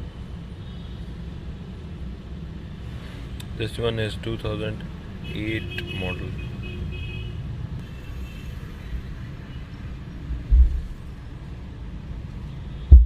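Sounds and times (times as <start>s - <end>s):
dull low thumps: 10.4s - 11.0s.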